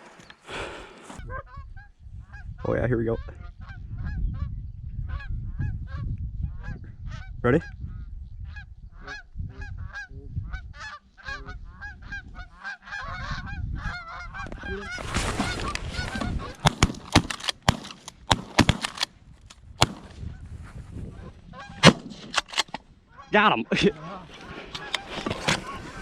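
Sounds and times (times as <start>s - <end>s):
geese honking: 9.0s - 16.8s, 23.1s - 26.0s
shotgun shots: 16.5s - 19.1s, 19.8s - 20.2s, 21.8s - 22.8s.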